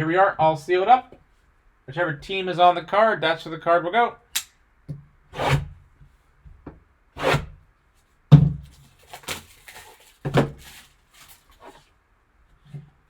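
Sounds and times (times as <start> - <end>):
scraping rustles: 8.6 - 12.0
card box thunks: 10.2 - 10.6.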